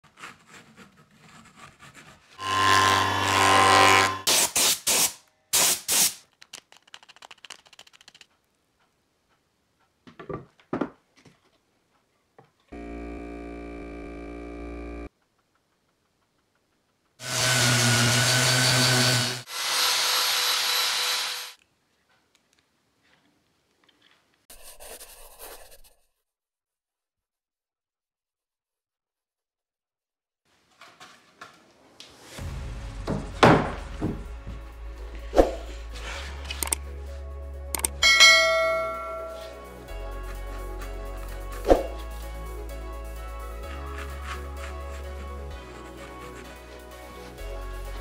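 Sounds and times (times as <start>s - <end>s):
power tool motor running: 12.8s - 15.1s, 17.2s - 21.6s.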